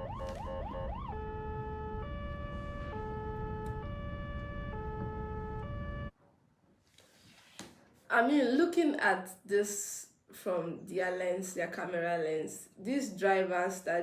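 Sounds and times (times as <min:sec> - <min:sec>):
ambulance siren: 0:00.0 - 0:06.1
road noise: 0:00.0 - 0:06.1.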